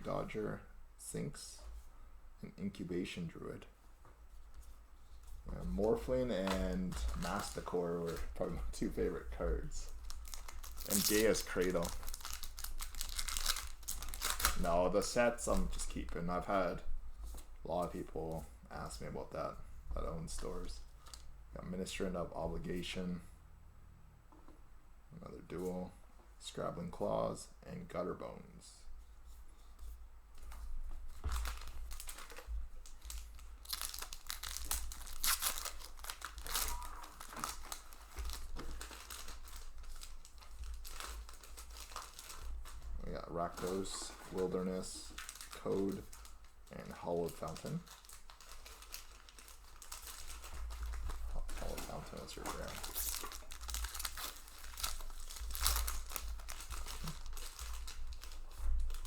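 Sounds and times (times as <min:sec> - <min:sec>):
foil wrappers tearing and crinkling: 0:05.8 - 0:08.3, 0:09.9 - 0:15.6, 0:31.2 - 0:42.8, 0:43.4 - 0:59.0.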